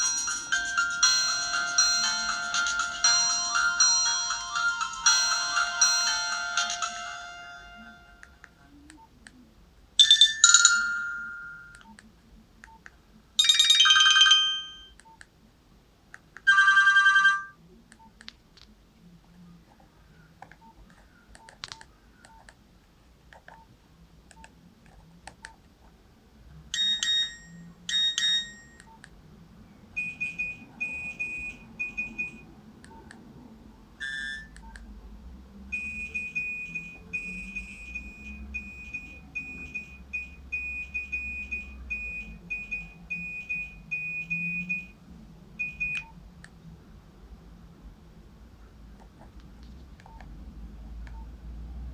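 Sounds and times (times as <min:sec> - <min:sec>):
mobile phone melodic chimes: 0:00.0 - 0:08.3, 0:10.0 - 0:11.8, 0:13.4 - 0:14.9, 0:30.0 - 0:32.4, 0:34.0 - 0:34.5, 0:35.7 - 0:45.0
rapid high beeps: 0:30.0 - 0:32.4, 0:34.0 - 0:34.6, 0:35.7 - 0:45.0, 0:45.6 - 0:46.1.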